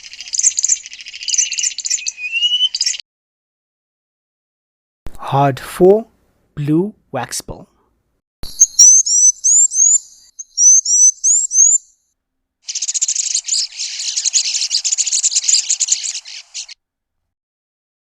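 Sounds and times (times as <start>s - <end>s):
bird whistling and twittering: 0.0s - 3.0s, 8.4s - 12.0s, 12.7s - 16.8s.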